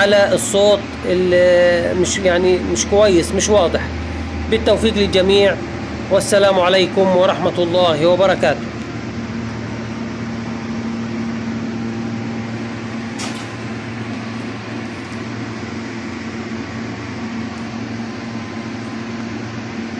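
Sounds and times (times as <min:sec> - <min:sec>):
exhaust fan humming: 0:00.0 - 0:19.9.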